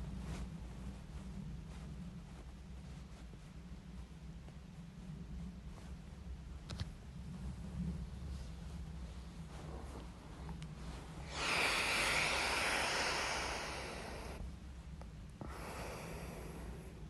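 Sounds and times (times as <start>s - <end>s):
soft breath: 7.4s - 14.5s, 15.3s - 17.0s
person breathing out hard: 11.2s - 14.4s, 15.4s - 17.0s.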